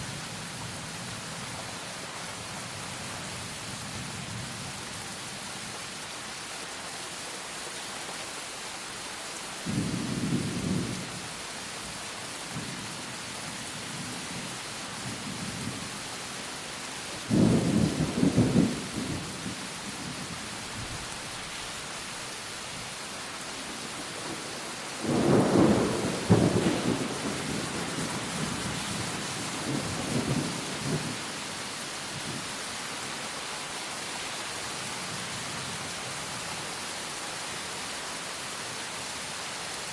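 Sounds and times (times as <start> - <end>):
steady rain: 0.0 - 39.9
thunder rolling: 25.0 - 27.8.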